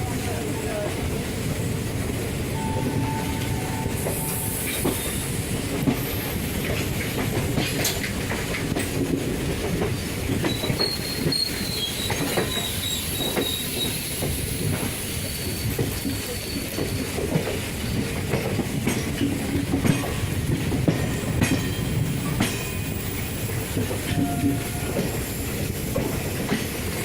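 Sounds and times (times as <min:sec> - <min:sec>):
train wheels clacking: 0:00.7 - 0:27.0
high wheel squeal: 0:02.6 - 0:05.4, 0:10.5 - 0:14.2, 0:15.0 - 0:17.2.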